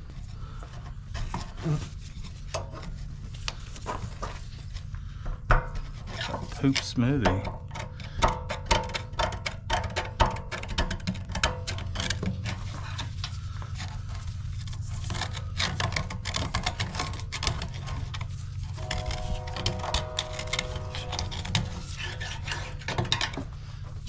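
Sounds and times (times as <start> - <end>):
steady tones: 18.8 - 22.2.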